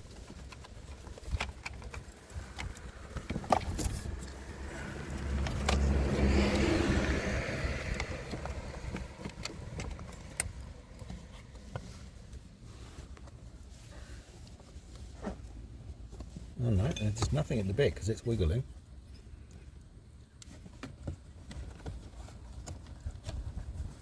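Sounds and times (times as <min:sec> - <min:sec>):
rushing noise with low rumble: 0:01.2 - 0:11.0.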